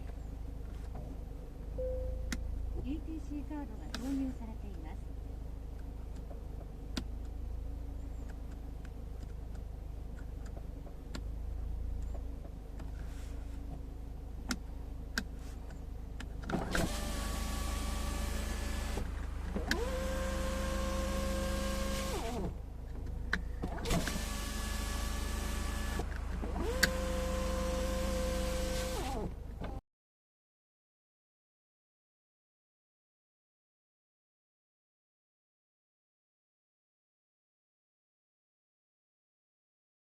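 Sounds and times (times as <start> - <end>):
low steady hum: 0.0 - 29.8
power window motor whining: 16.4 - 29.8.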